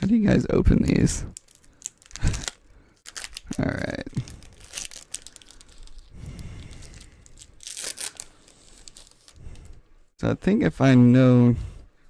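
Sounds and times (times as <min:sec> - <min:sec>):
foil wrapper tearing and crinkling: 0:01.3 - 0:09.6.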